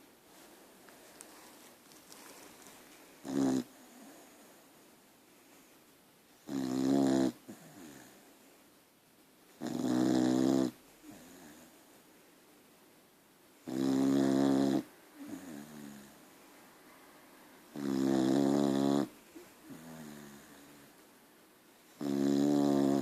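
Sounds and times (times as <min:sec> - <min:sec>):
dog snoring: 0:03.2 - 0:04.6, 0:06.4 - 0:08.3, 0:09.6 - 0:11.8, 0:13.6 - 0:16.2, 0:17.7 - 0:20.9, 0:21.9 - 0:23.0.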